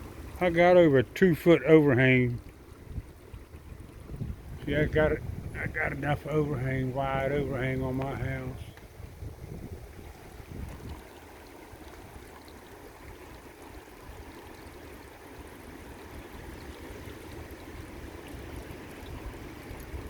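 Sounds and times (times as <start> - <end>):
wind buffeting microphone: 2.0 - 12.2, 16.1 - 20.0
steady rain falling: 4.5 - 8.9.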